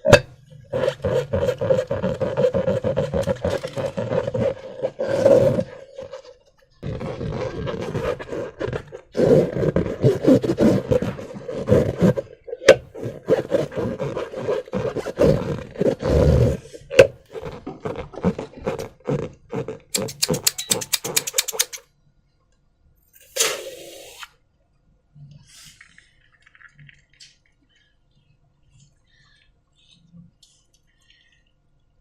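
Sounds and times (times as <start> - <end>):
slime squishing and scraping: 0.0 - 21.8
sharp clicks: 20.0 - 21.8.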